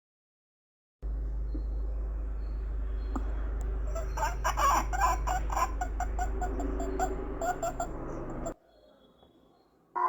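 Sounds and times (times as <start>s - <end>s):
steady low hum: 1.0s - 8.6s.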